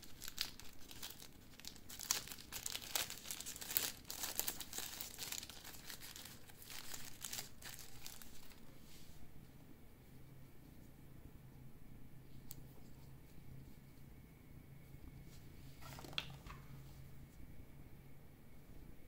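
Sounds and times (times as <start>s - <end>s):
packaging crinkling and rustling: 0.0s - 8.6s.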